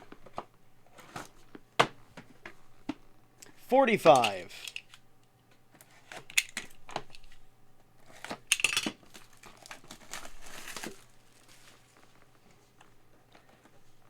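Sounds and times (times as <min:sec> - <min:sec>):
packaging crinkling and tearing: 0:09.0 - 0:12.2.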